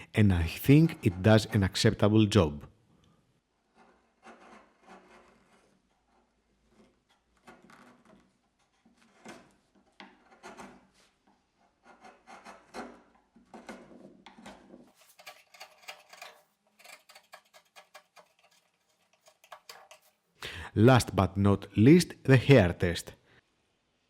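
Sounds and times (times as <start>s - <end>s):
chisel scraping wood: 0.4s - 2.0s, 3.4s - 20.2s.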